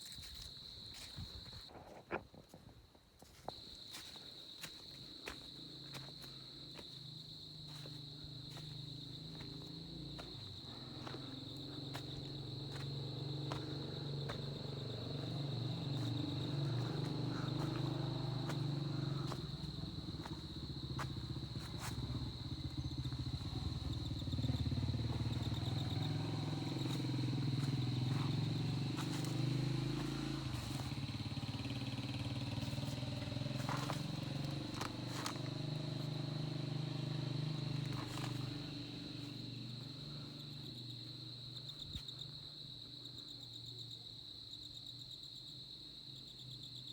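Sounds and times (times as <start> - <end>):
motor engine running: 5.2 - 40.6.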